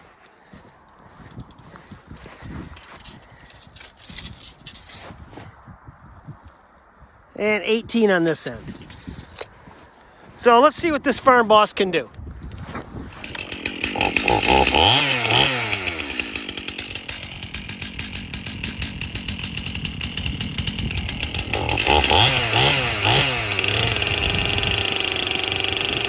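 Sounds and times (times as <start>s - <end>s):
chainsaw revving: 13.1s - 26.0s.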